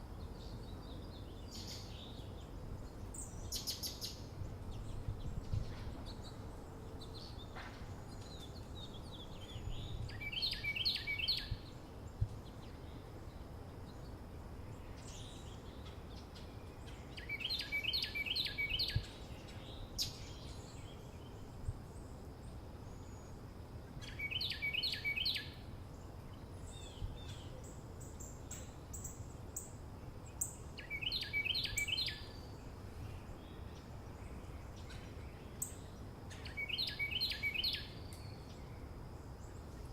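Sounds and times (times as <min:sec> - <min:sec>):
birds chirping faintly: 0:00.0 - 0:39.9
songbird repeating a phrase: 0:24.0 - 0:25.5, 0:36.3 - 0:38.3.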